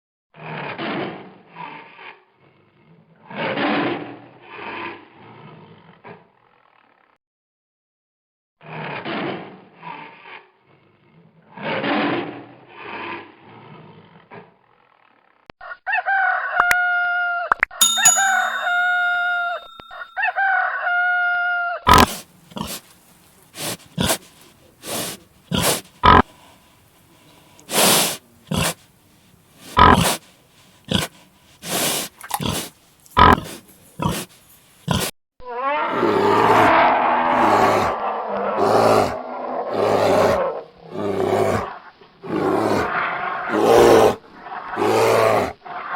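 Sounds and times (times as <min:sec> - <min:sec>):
animal pitched calls: 0:21.9 - 0:28.9, 0:29.6 - 0:45.9
animal grunts: 0:21.9 - 0:35.1, 0:37.3 - 0:45.6
animal roar: 0:30.9 - 0:45.9.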